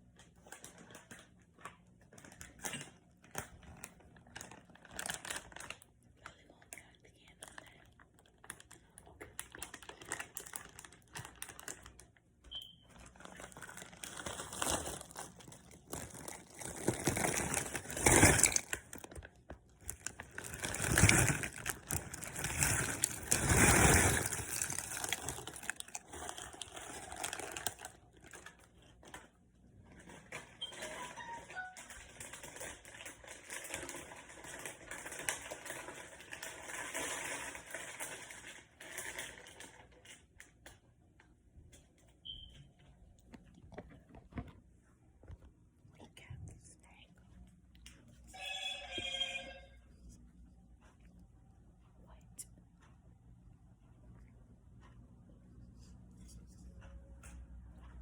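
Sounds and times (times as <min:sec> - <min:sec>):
snack packaging rustling: 0:00.3 - 0:40.3.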